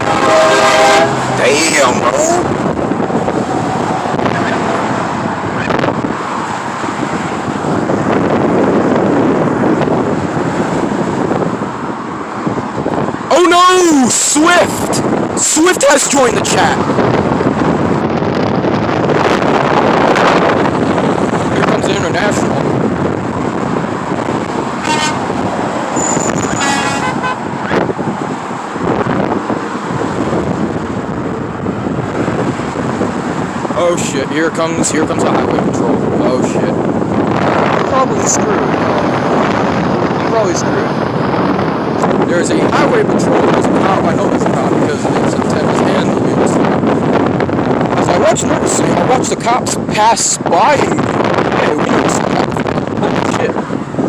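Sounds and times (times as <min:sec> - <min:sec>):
truck horn toots: 0:00.0 - 0:02.1, 0:24.8 - 0:27.7
wind on microphone: 0:00.0 - 0:13.4, 0:14.0 - 0:15.4, 0:16.2 - 0:54.0
highway traffic passing: 0:00.0 - 0:54.0.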